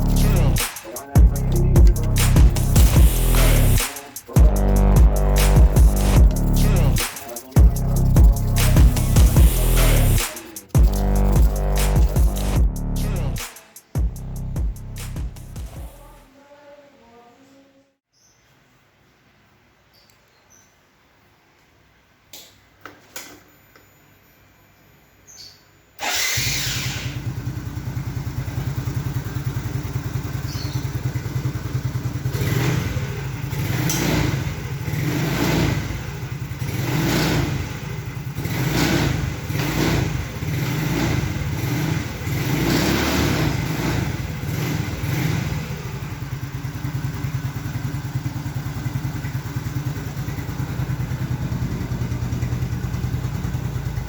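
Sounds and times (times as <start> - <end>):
scooter engine revving and idling: 0.0 - 13.4, 26.0 - 54.0.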